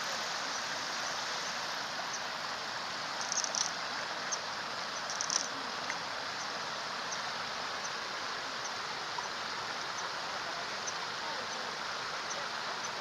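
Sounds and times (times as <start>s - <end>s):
stream rushing: 0.0s - 13.0s.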